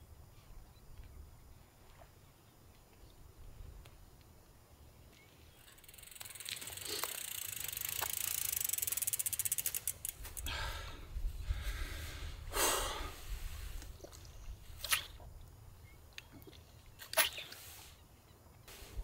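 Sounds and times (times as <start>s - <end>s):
bicycle freewheel ticking: 5.6s - 10.6s.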